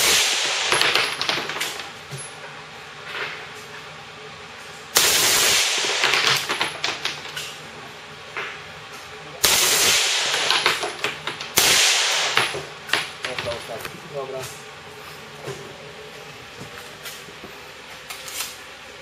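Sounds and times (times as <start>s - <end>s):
automatic gunfire bursts: 5.0s - 6.5s, 9.4s - 10.8s, 11.6s - 12.5s.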